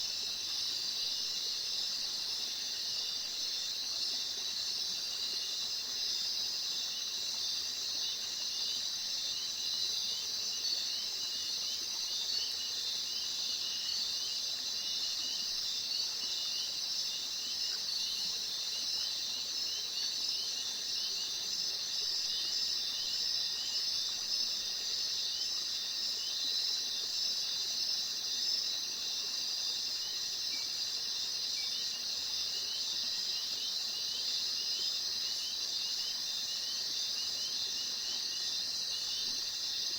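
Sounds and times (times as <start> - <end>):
insect chorus trilling: 0.0 - 39.9.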